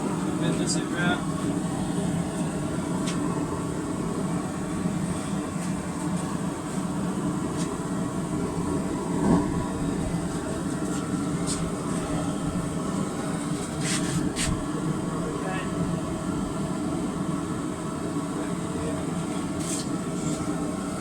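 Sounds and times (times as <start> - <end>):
forge roaring: 7.4 - 17.6.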